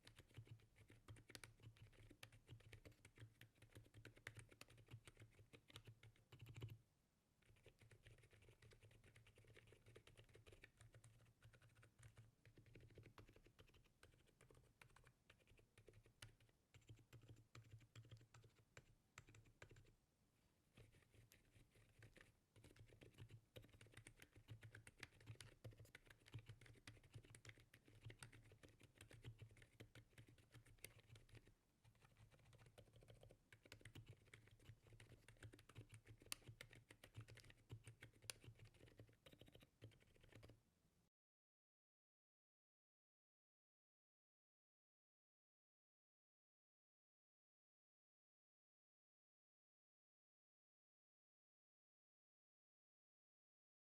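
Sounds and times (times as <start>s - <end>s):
muted keyboard typing: 0.0s - 6.8s, 7.4s - 19.9s, 20.8s - 40.6s.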